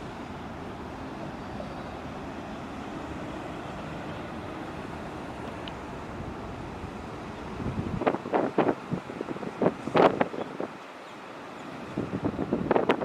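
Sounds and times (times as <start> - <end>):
distant jet aircraft rumble: 0.0 - 13.0.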